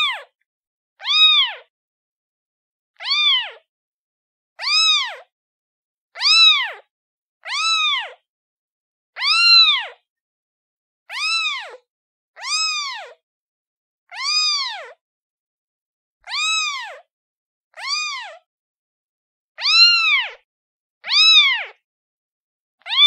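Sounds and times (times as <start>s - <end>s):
kitten meowing: 0.0s - 0.3s, 1.0s - 1.7s, 3.0s - 3.6s, 4.6s - 5.3s, 6.2s - 8.2s, 9.2s - 10.0s, 11.1s - 11.8s, 12.4s - 13.2s, 14.1s - 15.0s, 16.3s - 17.1s, 17.8s - 18.4s, 19.6s - 20.4s, 21.0s - 21.8s.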